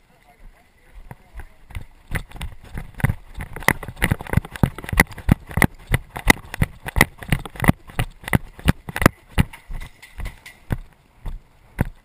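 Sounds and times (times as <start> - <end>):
running footsteps: 0.4 - 12.0
gear clattering: 1.8 - 10.9.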